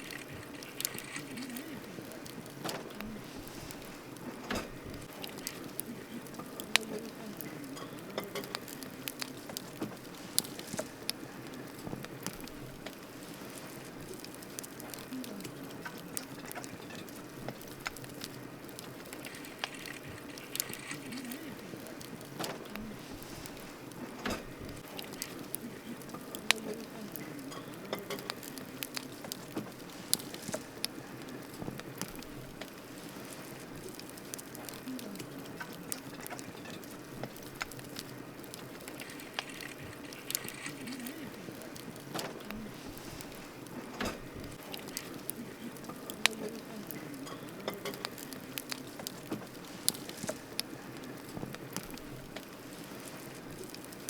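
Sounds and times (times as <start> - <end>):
campfire crackling: 0.0 - 54.0
sharp fire pops: 0.0 - 54.0.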